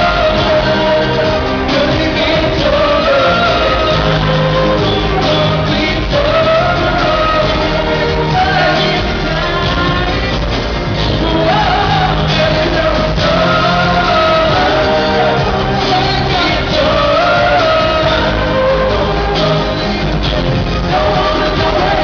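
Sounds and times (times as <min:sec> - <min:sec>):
live pop band playing: 0:00.0 - 0:22.0
man singing: 0:00.0 - 0:22.0.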